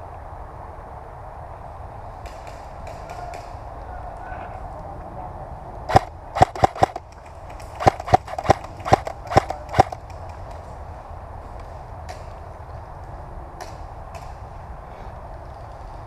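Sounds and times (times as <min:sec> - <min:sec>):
airsoft gun shots: 0:05.9 - 0:10.0.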